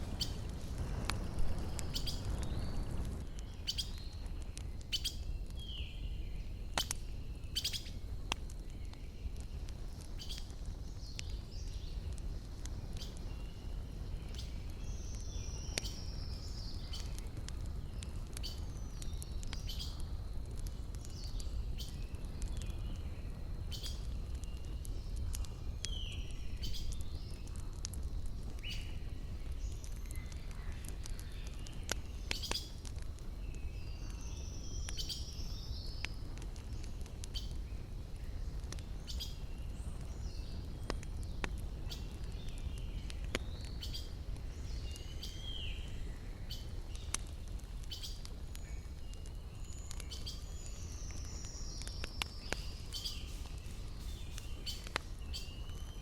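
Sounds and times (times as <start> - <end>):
wood fire crackling: 0.0 - 56.0
birds chirping: 41.3 - 56.0.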